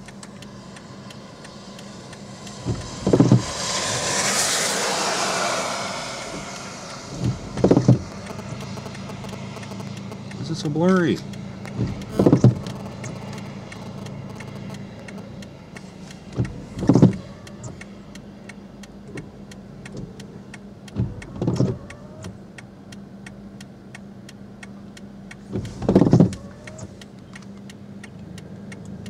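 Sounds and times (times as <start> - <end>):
fast even ticking: 0.0 - 5.6, 6.2 - 29.0
car engine low hum: 0.0 - 29.0
short whirring sweep: 1.8 - 17.8.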